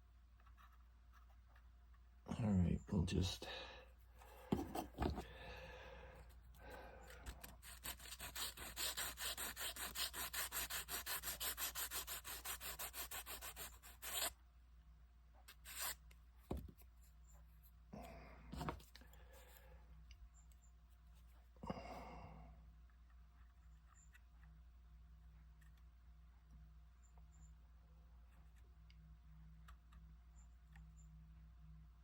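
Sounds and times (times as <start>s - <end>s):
hand sanding wood: 7.6s - 14.3s, 15.5s - 16.0s.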